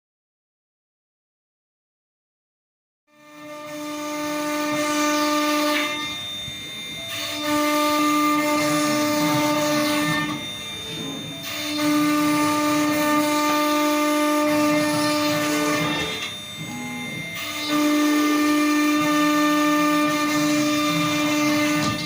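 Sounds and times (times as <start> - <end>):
router spindle whining: 3.1 - 22.0
bit cutting wood hiss: 3.3 - 22.0.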